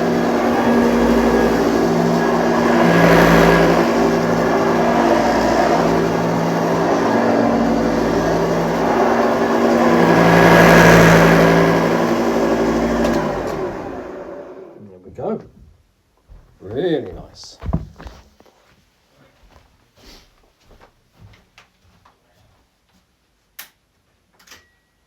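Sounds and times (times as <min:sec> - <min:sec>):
vacuum cleaner running: 0:00.0 - 0:14.8.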